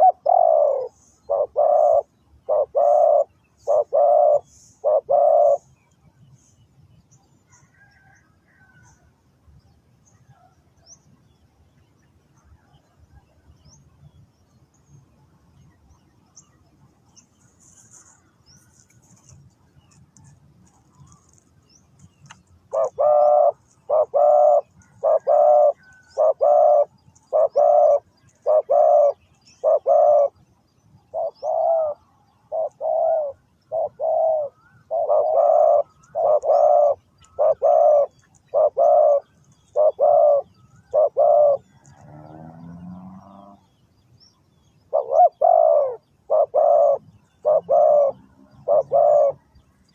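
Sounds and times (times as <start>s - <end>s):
dove cooing: 0.0s - 5.8s, 22.3s - 30.4s, 31.0s - 43.7s, 44.9s - 49.6s.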